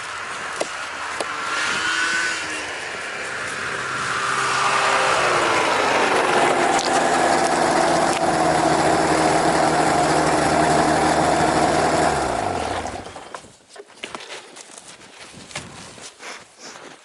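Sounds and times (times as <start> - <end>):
small engine winding down: 1.4 - 13.3.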